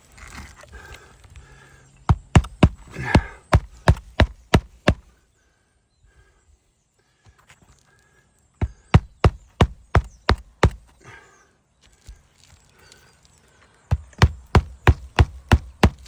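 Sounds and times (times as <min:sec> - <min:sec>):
hammer driving roofing nails: 0:02.1 - 0:05.1, 0:08.6 - 0:10.9, 0:13.9 - 0:16.0.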